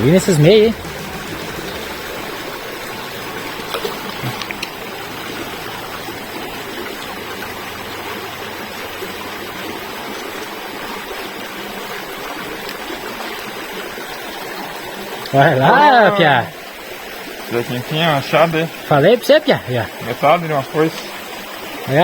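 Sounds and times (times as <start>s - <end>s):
running water rushing: 0.0s - 22.0s.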